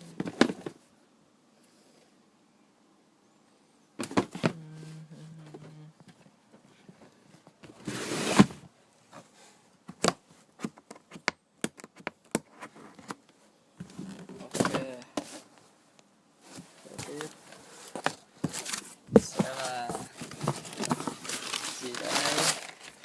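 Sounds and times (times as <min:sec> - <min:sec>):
low steady hum: 0:00.0 - 0:07.8
paper rustling: 0:16.4 - 0:23.0
boxes knocking and clicking: 0:17.9 - 0:22.6.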